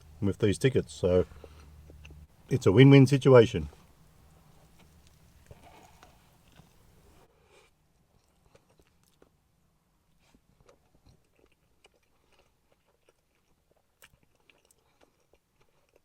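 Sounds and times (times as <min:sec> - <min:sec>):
faint chewing mouth clicks: 0:01.3 - 0:02.3, 0:10.2 - 0:16.0.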